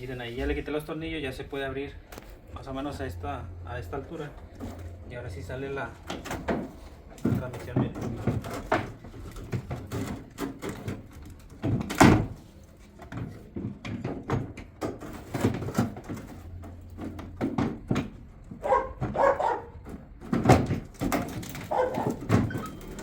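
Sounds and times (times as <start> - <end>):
metal parts knocking and scraping: 6.0 - 23.0.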